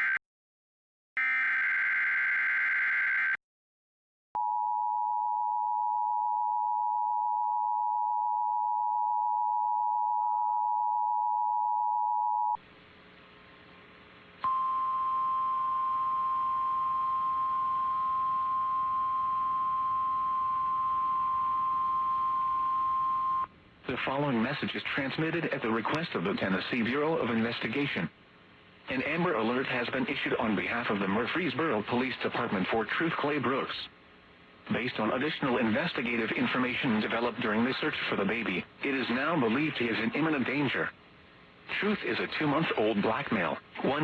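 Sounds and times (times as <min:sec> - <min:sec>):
two-tone attention signal: 0:14.4 - 0:23.5.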